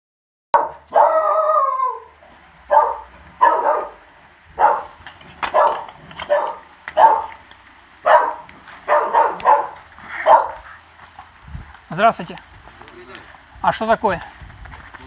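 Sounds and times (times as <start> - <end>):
dog barking: 0.6 - 2.0, 2.7 - 4.0, 4.6 - 7.4, 8.0 - 10.8
dog howling: 0.6 - 4.0, 4.6 - 4.9, 5.5 - 7.4, 8.0 - 10.8.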